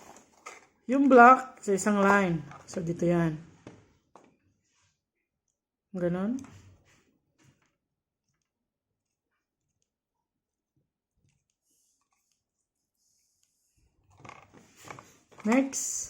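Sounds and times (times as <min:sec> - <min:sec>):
rustling handling noise: 0:00.0 - 0:03.0, 0:14.0 - 0:16.0.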